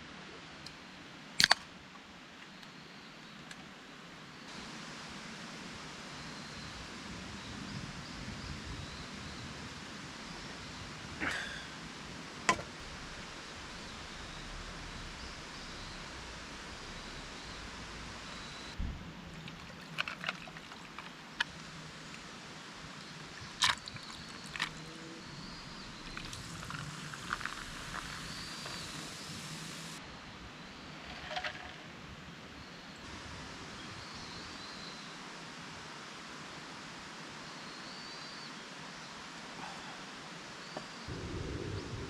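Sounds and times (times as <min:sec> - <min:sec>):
small stream flowing: 0:08.8 - 0:30.0.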